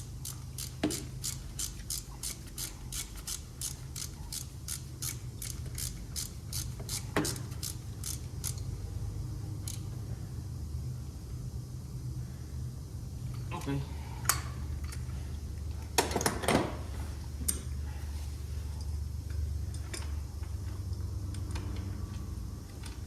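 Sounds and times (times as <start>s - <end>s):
ratchet wrench clicking: 0.0s - 8.7s, 9.6s - 9.9s, 21.2s - 22.2s.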